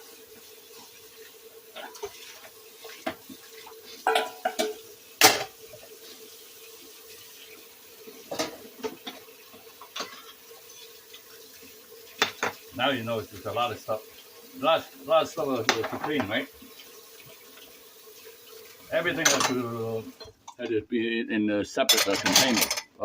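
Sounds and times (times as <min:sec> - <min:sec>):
dishes and pots clinking: 0:04.0 - 0:05.6, 0:08.3 - 0:10.4, 0:12.2 - 0:12.6, 0:15.6 - 0:16.4, 0:19.1 - 0:20.6, 0:21.9 - 0:23.0.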